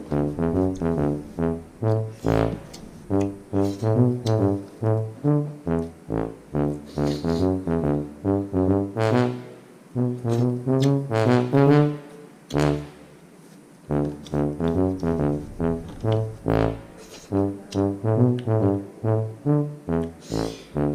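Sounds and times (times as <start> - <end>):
instrumental music over a beat: 13.9 - 20.2.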